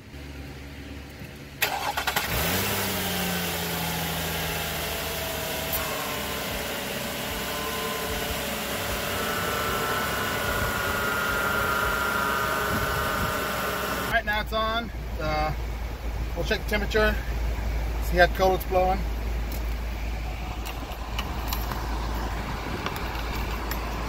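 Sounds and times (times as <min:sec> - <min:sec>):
car engine starting and idling: 0:00.0 - 0:24.0
faint high whine: 0:05.6 - 0:14.5.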